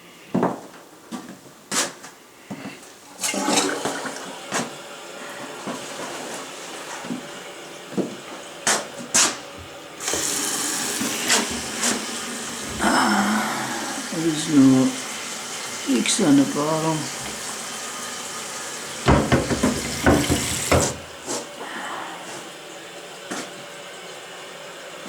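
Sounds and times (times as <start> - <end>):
rush of flushing water: 3.1 - 25.0
toilet flush clack: 3.2 - 21.5
hiss of water: 10.0 - 22.6.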